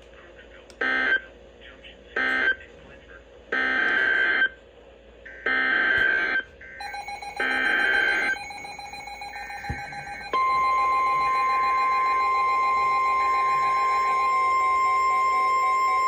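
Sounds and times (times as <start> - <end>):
steady warning alarm tone: 5.3 - 16.0.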